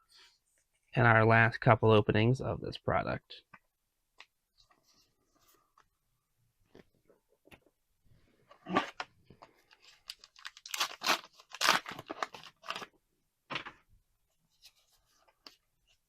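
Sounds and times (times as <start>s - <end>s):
foil wrapper tearing and crinkling: 9.9s - 12.9s.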